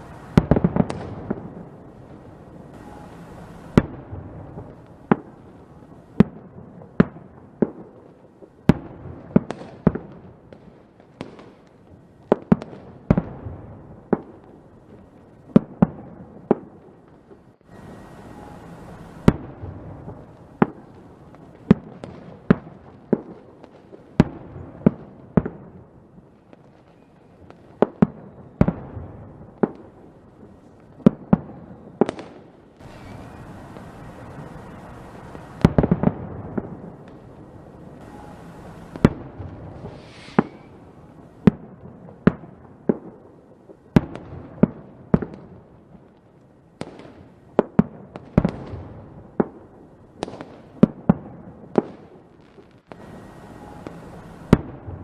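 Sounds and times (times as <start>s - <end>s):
rumbling hiss: 0.0s - 6.8s, 17.5s - 21.7s, 32.7s - 42.1s, 52.9s - 55.0s
fireworks bangs: 0.0s - 45.7s, 46.8s - 55.0s.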